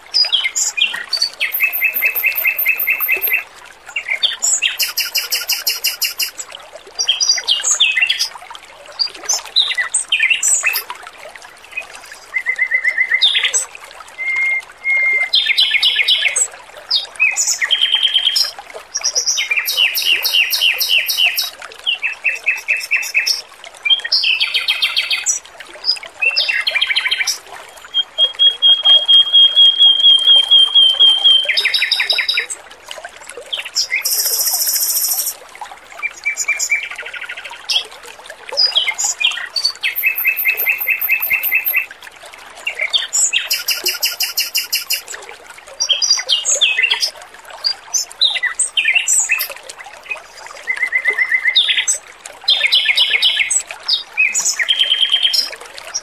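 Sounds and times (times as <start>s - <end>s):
trickling water: 0.0s - 56.0s
bird singing whistled trills: 1.4s - 3.4s, 4.7s - 6.4s, 14.2s - 15.7s, 19.6s - 21.5s, 22.3s - 23.4s, 27.0s - 32.5s, 34.0s - 35.4s, 39.8s - 41.9s, 43.4s - 45.0s.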